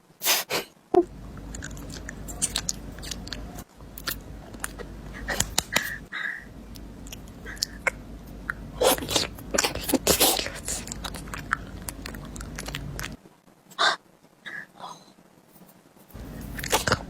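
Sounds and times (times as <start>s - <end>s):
food crunching while chewed: 1.1s - 13.2s, 16.2s - 17.0s.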